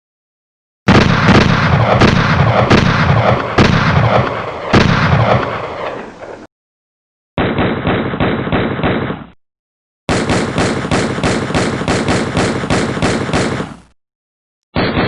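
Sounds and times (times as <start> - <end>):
gunfire bursts: 0.9 - 6.2, 7.4 - 9.3, 10.1 - 14.0.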